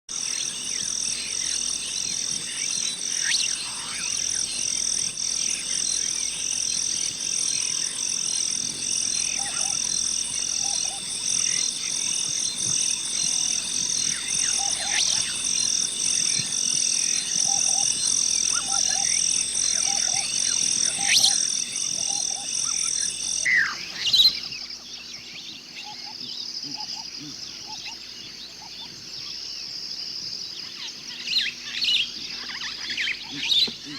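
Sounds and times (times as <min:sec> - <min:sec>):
pulsing insect chorus: 0:00.1 - 0:33.9
bird calls: 0:00.2 - 0:29.4, 0:30.6 - 0:33.9
frog croaks: 0:02.5 - 0:23.8, 0:26.0 - 0:28.0, 0:33.0 - 0:33.9
high steady drone: 0:03.0 - 0:23.5.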